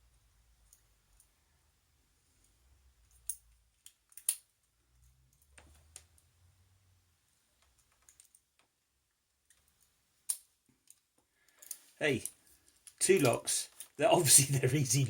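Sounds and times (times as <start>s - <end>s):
lock picks clicking in padlocks: 3.1s - 4.5s.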